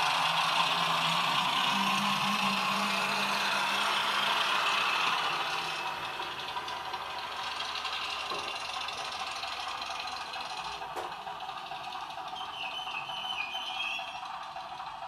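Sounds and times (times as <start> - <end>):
low hum: 0.0 - 5.9
model train rattling: 0.0 - 15.0
small diesel engine sound: 0.0 - 15.0.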